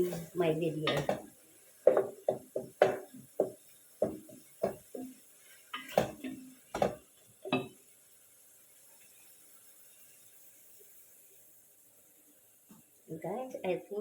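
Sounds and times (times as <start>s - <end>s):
utensils clinking against a pot: 0.0s - 5.0s, 5.7s - 7.8s.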